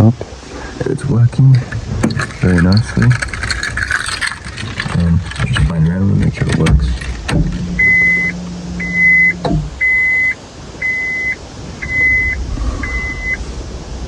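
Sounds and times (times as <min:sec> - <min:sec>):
low steady hum: 0:00.0 - 0:14.0
high electronic beeps: 0:07.3 - 0:13.4.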